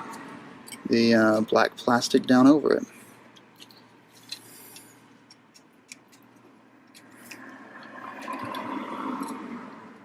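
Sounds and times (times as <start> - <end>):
plastic parts rustling: 3.4 - 6.3.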